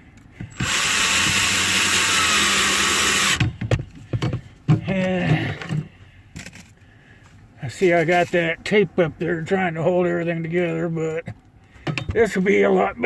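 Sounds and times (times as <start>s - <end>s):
cordless drill driving a screw: 0.5s - 3.4s.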